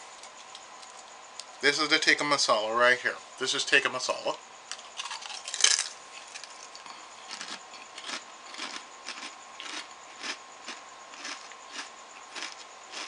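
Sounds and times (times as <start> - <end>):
crunching potato chips: 4.8 - 13.0.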